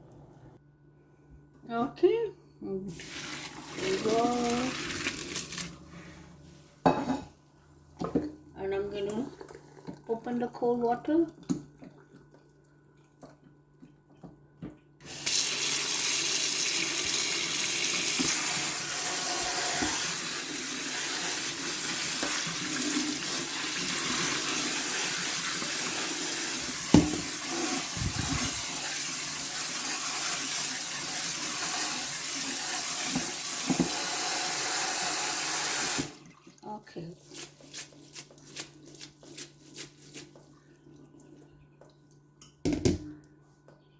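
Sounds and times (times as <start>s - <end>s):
faucet water running into sink: 2.9s - 5.8s, 15.0s - 36.6s.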